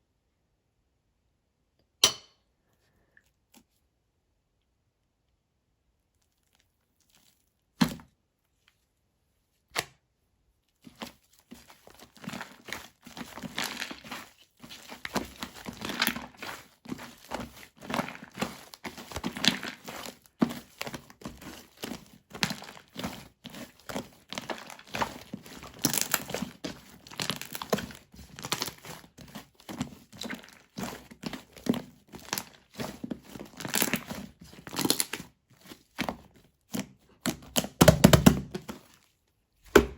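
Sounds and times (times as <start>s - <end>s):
slime crackling in hands: 10.9s - 36.1s.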